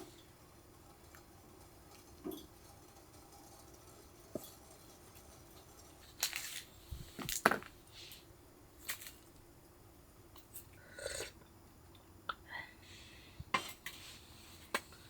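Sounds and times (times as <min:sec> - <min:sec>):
small objects clicking and knocking: 0:04.3 - 0:07.8, 0:08.8 - 0:09.3.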